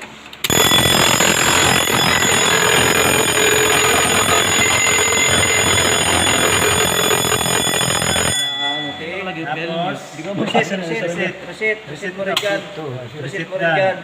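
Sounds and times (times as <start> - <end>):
fire alarm bell ringing: 0.4 - 10.3.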